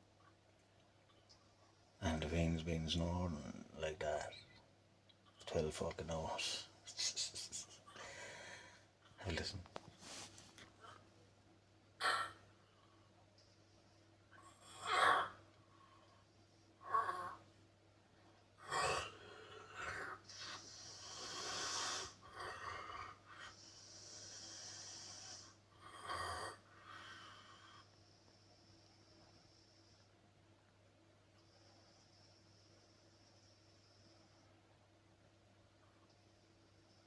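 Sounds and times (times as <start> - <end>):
wheezy hissing breaths: 6.4 - 9.0, 18.6 - 30.2, 31.4 - 34.7
man snoring heavily: 18.6 - 23.2.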